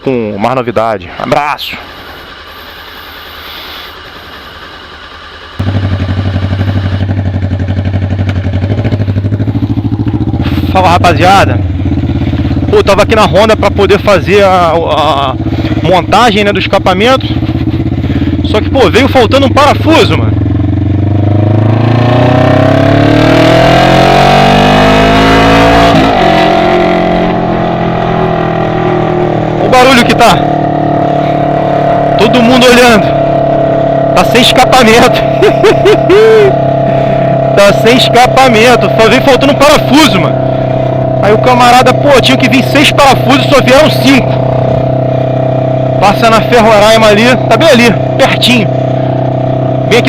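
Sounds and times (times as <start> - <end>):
loud engine idling without muffler: 1.0 - 21.9, 31.2 - 50.0
motorcycle engine running quietly: 1.8 - 21.2.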